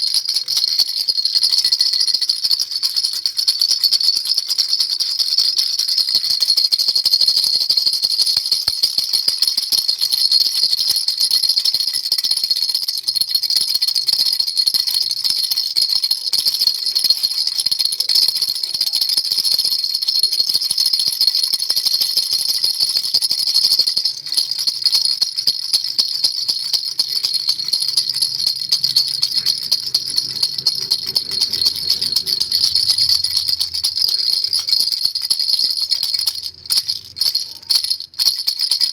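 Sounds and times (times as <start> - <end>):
baby rattle shaking: 0.0 - 38.9
faint low hum: 26.9 - 37.8.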